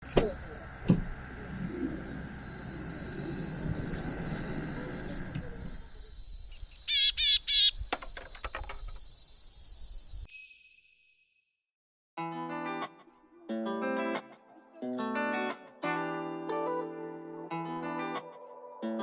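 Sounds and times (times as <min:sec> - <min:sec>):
low background rumble: 0:00.0 - 0:06.2
insects trilling: 0:00.4 - 0:10.3
bird warbling chirps: 0:04.7 - 0:08.5.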